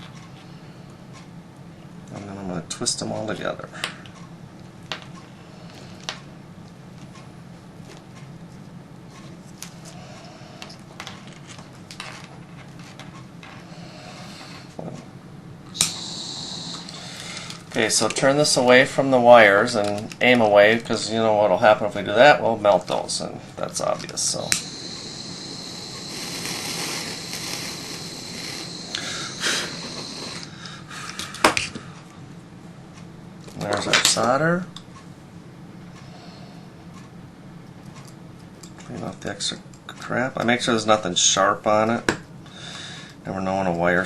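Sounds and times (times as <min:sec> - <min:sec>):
steady low hum: 0:00.0 - 0:44.0
gas torch hissing with whistle: 0:15.7 - 0:17.5, 0:24.2 - 0:30.6.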